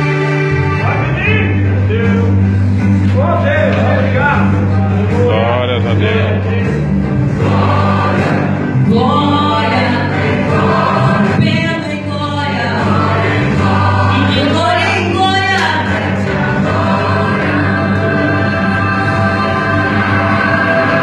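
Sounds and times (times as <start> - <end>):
gospel choir singing: 0.0 - 2.4, 5.9 - 21.0
low backing chords: 0.0 - 21.0.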